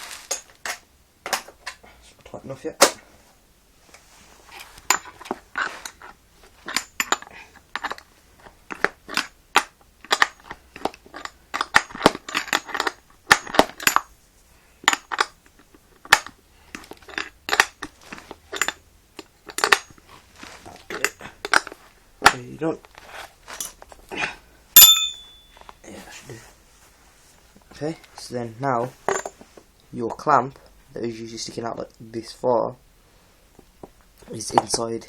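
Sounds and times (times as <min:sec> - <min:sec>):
spanner clicking on bolts: 0:18.5 - 0:20.0.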